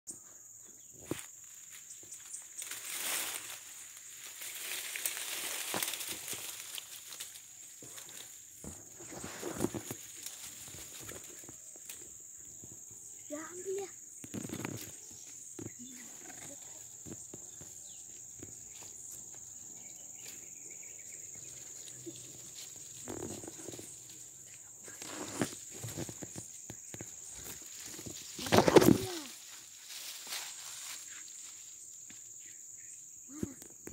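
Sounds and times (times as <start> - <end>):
insects chirring: 0.1 - 33.9
leaves and twigs rustling: 0.9 - 32.6
twigs snapping: 4.2 - 8.4.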